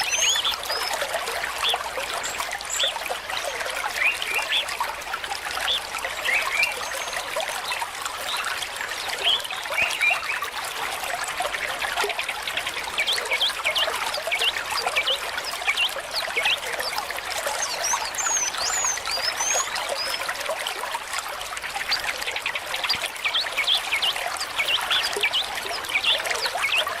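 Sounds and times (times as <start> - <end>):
birds chirping: 0.0 - 4.9, 5.6 - 7.8, 9.2 - 10.4, 12.8 - 20.3, 22.8 - 27.0
water trickling: 0.0 - 27.0.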